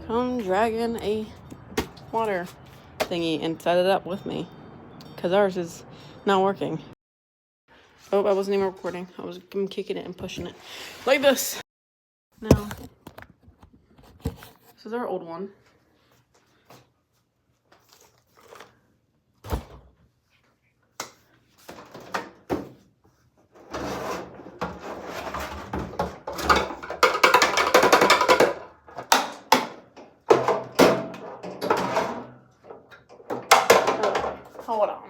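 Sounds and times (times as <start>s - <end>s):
objects scraping and clattering: 21.5s - 34.9s.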